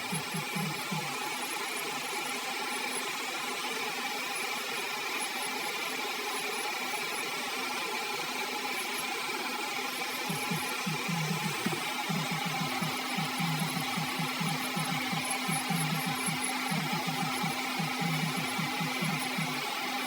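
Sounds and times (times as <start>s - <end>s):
electric nail drill whining: 10.3s - 19.8s.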